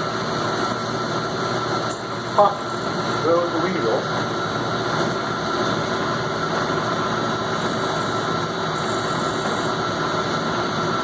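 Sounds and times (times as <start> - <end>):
metal lathe motor humming: 0.0 - 11.0
thin high whine: 7.4 - 10.1.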